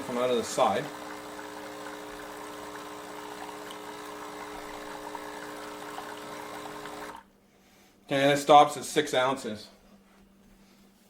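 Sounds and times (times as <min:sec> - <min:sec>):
espresso machine pump humming: 0:00.0 - 0:07.3
hot water pouring into cup: 0:00.0 - 0:07.3.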